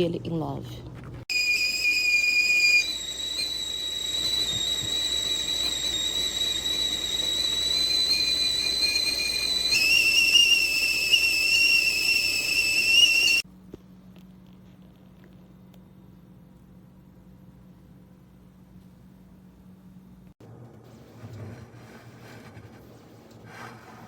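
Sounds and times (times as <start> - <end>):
kettle whistling: 1.3 - 13.5.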